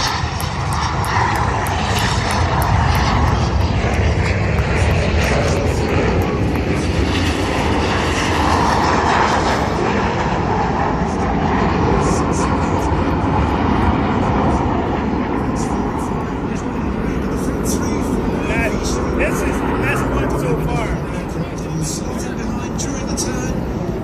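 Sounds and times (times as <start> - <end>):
jets flying past: 0.0 - 24.0.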